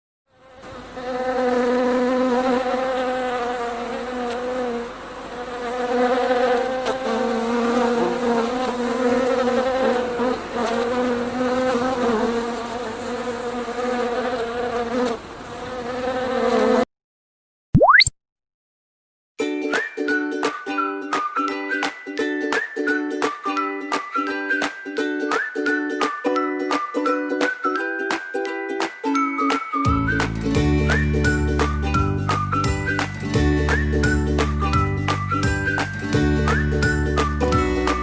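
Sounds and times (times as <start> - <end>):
honey bee buzzing: 0.3 - 16.9
upward sweeping tone: 17.8 - 18.1.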